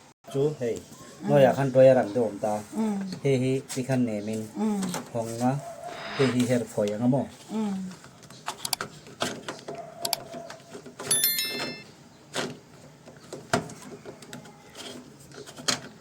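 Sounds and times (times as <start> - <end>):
electronic beep tones: 11.1 - 11.8.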